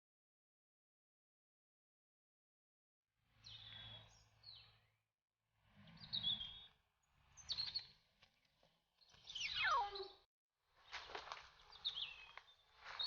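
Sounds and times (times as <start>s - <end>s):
bird calling: 9.2s - 10.2s.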